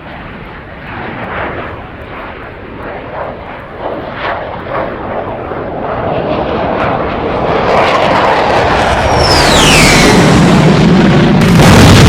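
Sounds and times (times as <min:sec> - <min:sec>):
airplane engine noise: 0:00.0 - 0:12.0.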